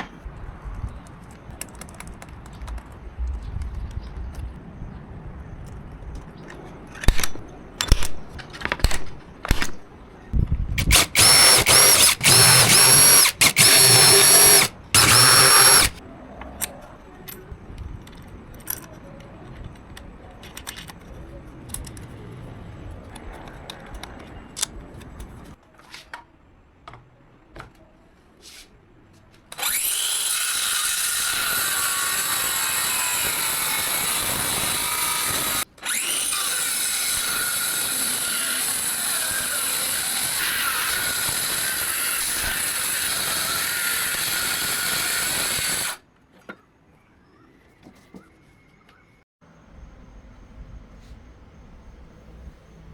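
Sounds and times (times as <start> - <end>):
circular saw cutting: 10.8 - 16.0, 29.6 - 46.0
power tool motor whining: 10.8 - 16.0, 29.5 - 46.0.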